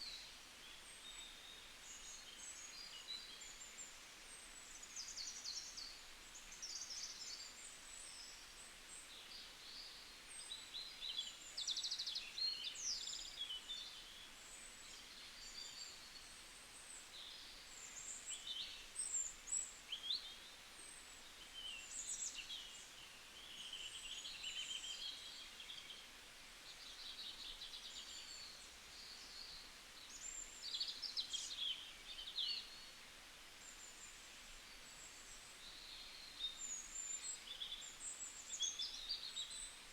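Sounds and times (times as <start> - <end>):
songbirds singing and calling: 33.7 - 39.9.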